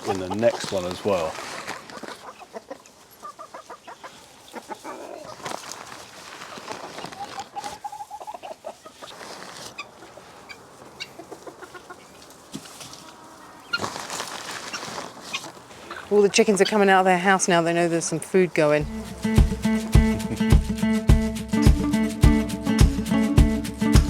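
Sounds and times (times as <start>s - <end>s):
chickens clucking: 0.0s - 21.7s
chicken drawn-out call: 1.5s - 5.6s, 6.4s - 17.0s.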